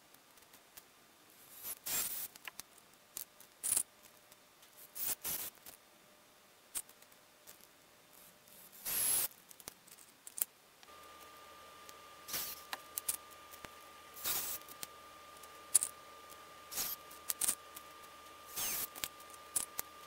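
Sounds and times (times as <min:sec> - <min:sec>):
faint whine with low hum: 0:00.0 - 0:20.0
small objects rustling and scraping: 0:06.8 - 0:10.5, 0:11.9 - 0:20.0.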